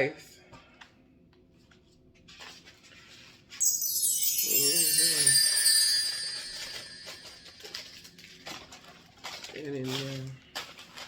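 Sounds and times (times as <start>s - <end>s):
jingling bell-like shimmer: 3.6s - 8.0s.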